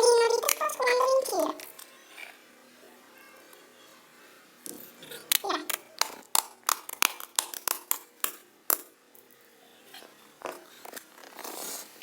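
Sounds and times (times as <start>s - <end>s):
slime popping by hand: 5.3s - 8.9s.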